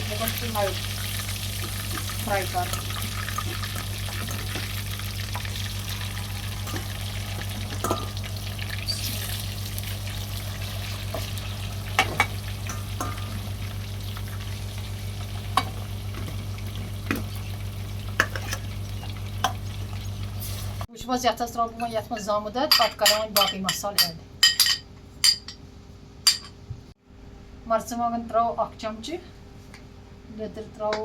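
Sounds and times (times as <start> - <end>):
chicken sizzling in hot oil: 0.0 - 20.9
constant low hum: 0.0 - 31.0
spoon clinking against pot: 22.7 - 25.6.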